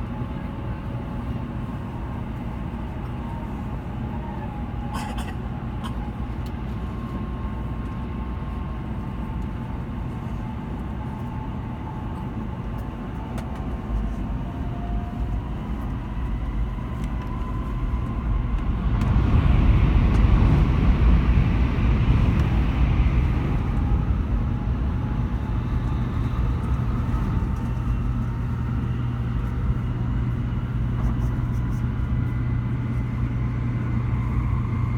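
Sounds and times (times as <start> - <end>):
bullet train rumble and whine: 0.0 - 34.9.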